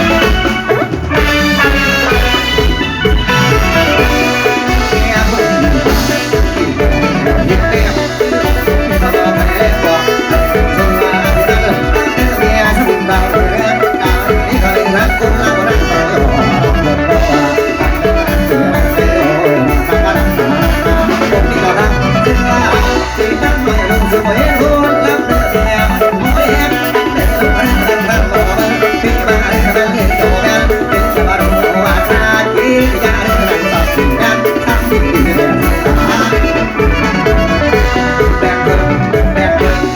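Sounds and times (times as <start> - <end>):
band music with fast drum beat: 0.0 - 39.9.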